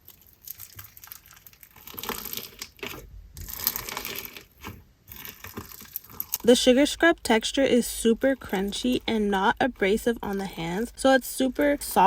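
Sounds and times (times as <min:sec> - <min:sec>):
crunchy slime squeezed by hand: 0:00.0 - 0:06.5.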